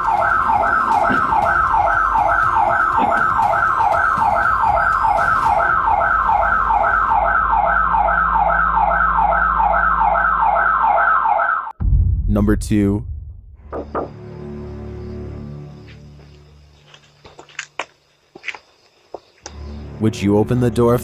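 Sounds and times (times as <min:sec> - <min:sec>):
security alarm siren sweeping: 0:00.0 - 0:11.8.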